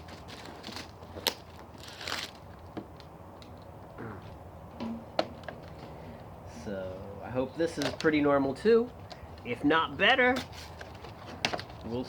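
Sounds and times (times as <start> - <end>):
wrapping rustling: 0.0 - 2.6.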